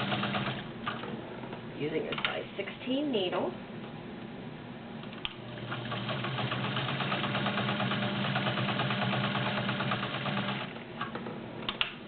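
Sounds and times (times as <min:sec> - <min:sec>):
sewing machine stitching: 0:00.0 - 0:00.6, 0:05.6 - 0:10.8.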